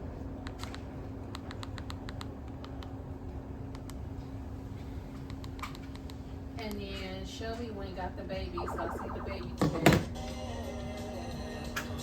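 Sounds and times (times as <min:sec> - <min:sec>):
steady low hum: 0:08.5 - 0:09.8.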